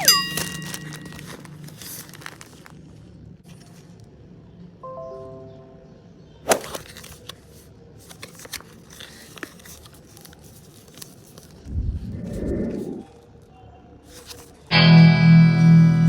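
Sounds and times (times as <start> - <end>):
packaging crinkling and tearing: 0.0 - 4.0, 6.5 - 11.7.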